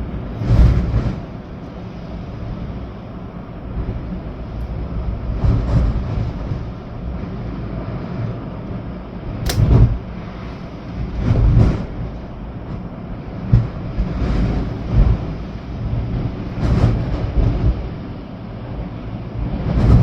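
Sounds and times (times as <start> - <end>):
sharp knock: 9.5 - 9.8.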